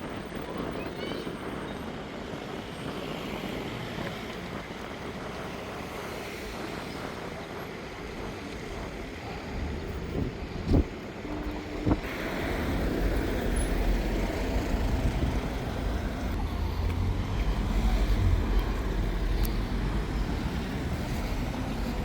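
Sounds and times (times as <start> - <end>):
road vehicle rumble: 0.0 - 22.0.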